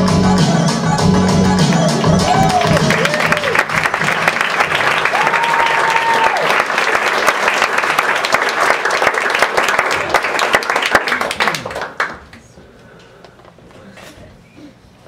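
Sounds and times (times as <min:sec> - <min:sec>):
audience applauding: 0:01.7 - 0:12.5.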